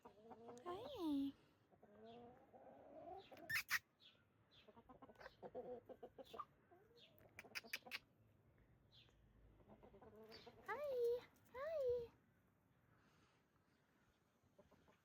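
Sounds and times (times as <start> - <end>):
chickens clucking: 4.6 - 8.0, 9.6 - 10.7, 14.5 - 15.0.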